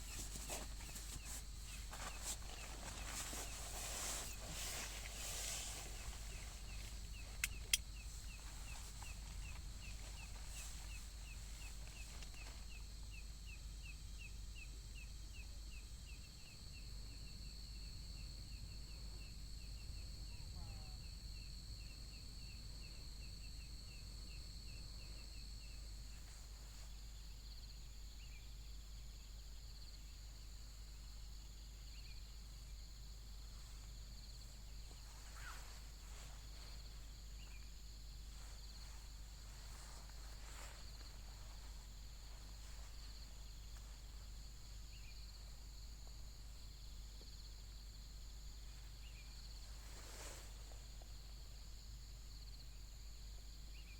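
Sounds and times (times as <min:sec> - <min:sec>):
insects droning: 0:00.0 - 0:53.9
sharp clicks: 0:07.4 - 0:07.9.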